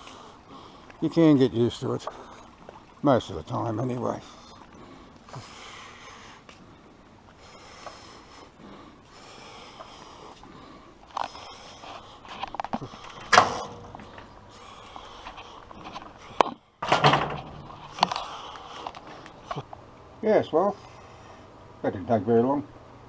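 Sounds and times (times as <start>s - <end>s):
objects clicking and knocking: 12.4s - 14.4s
sharp clunk: 13.2s - 14.3s, 16.8s - 18.2s.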